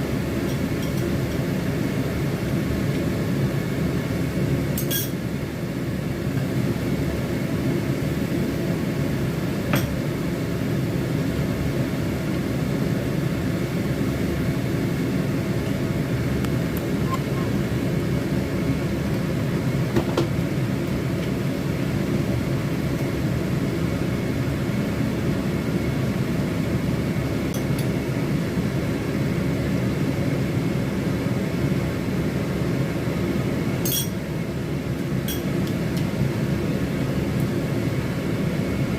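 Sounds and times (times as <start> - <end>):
kitchen equipment humming: 0.0 - 24.8, 32.1 - 38.9
utensil clinking on cookware: 33.9 - 34.2.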